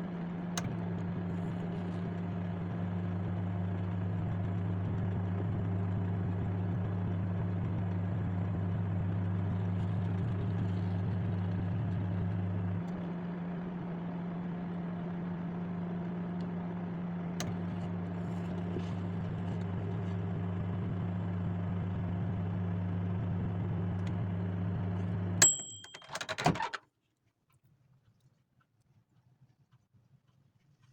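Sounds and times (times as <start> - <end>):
microwave oven humming: 0.0 - 26.7
microwave beep: 25.4 - 26.5
clicks and rattles: 25.4 - 26.8.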